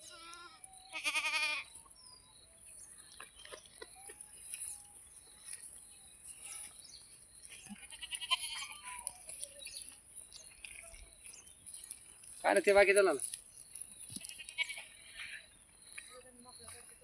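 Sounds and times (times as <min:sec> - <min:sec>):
goat bleating: 0:00.0 - 0:01.7, 0:07.6 - 0:09.2, 0:14.2 - 0:15.5.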